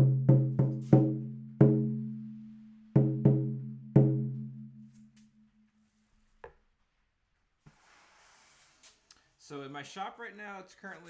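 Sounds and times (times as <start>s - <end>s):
frame drum beats with deep ring: 0.0s - 2.2s, 3.0s - 4.8s.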